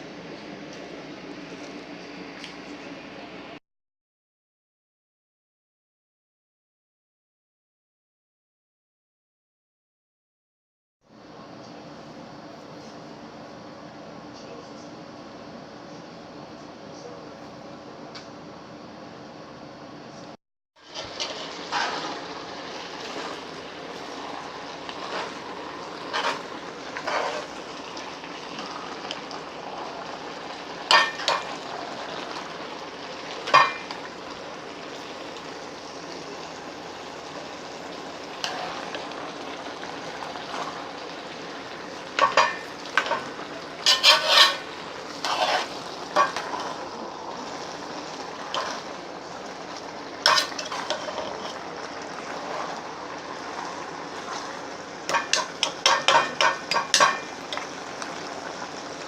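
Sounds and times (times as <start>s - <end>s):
food sizzling: 20.8s - 59.0s
utensil clinking against pan: 55.1s - 57.3s.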